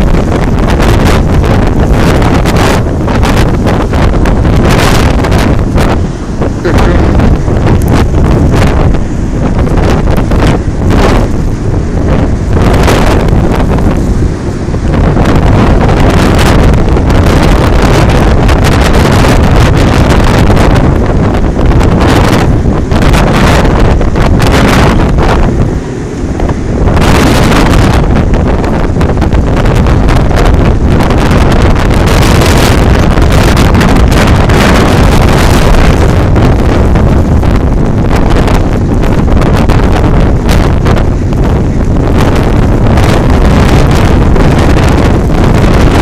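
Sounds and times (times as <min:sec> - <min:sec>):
strong wind buffeting microphone: 0:00.0 - 0:46.0.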